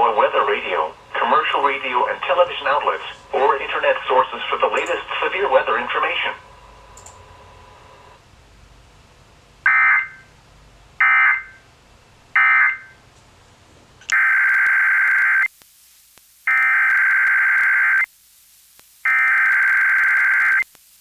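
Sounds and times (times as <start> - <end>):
screechy digital data bursts: 19.0 - 20.6.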